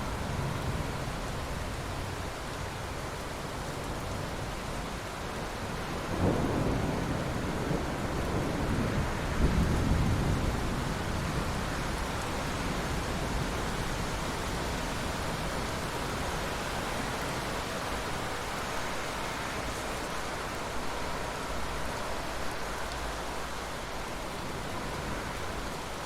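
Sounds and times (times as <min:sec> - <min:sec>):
heavy rain: 0:00.0 - 0:26.0
thunder rumbling: 0:06.1 - 0:16.2.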